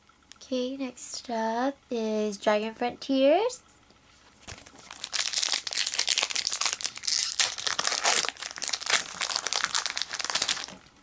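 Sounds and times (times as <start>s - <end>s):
foil wrapper crinkling: 4.4s - 10.9s.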